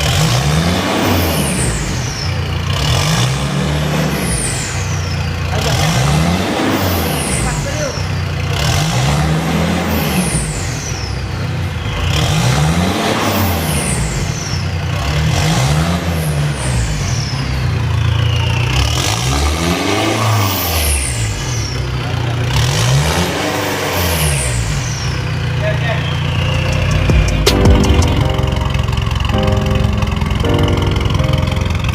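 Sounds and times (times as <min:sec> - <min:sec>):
car engine revving: 0:00.0 - 0:31.9.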